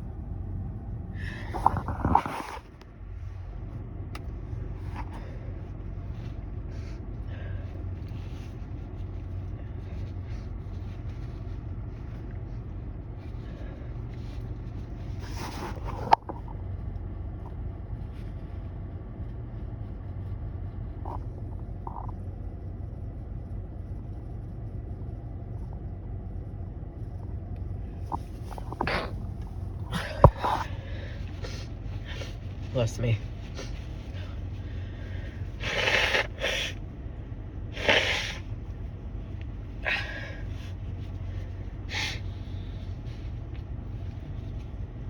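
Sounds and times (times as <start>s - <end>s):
steady low hum: 0.0s - 45.0s
person sniffing: 28.4s - 29.2s, 33.5s - 36.8s, 37.8s - 38.5s.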